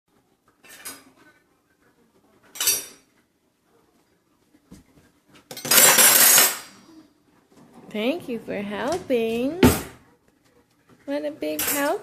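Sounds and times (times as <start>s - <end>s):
metal cutlery clattering: 0.6s - 1.1s, 2.5s - 3.1s, 5.5s - 6.8s, 11.5s - 12.0s.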